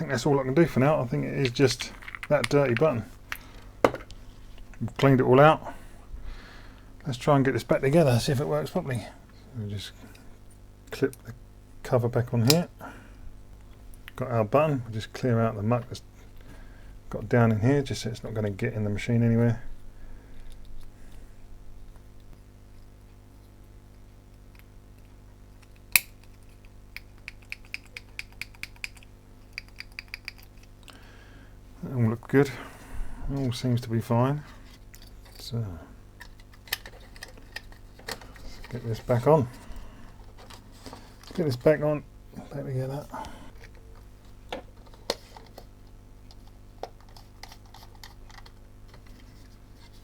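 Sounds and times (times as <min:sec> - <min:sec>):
tool tapping plastic housing: 0:01.9 - 0:04.2.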